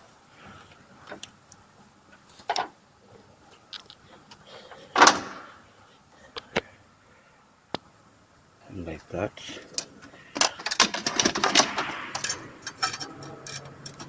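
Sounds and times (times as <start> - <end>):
hand tools clicking and knocking: 9.7 - 14.0
metal clatter: 9.7 - 14.0.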